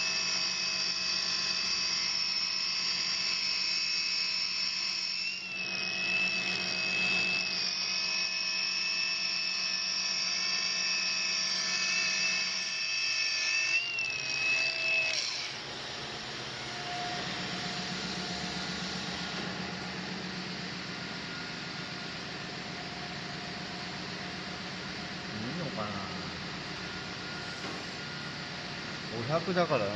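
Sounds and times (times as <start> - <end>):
stone polisher whining: 0.0 - 19.5.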